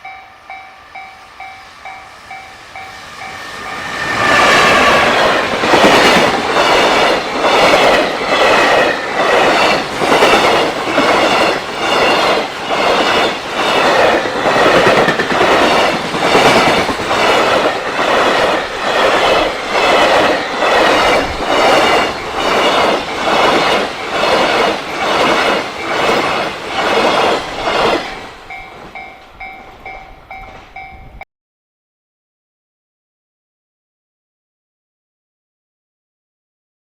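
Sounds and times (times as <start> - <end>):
crossing warning bell: 0.0 - 8.8, 9.4 - 31.3
train wheels clacking over rail joints: 4.3 - 30.8.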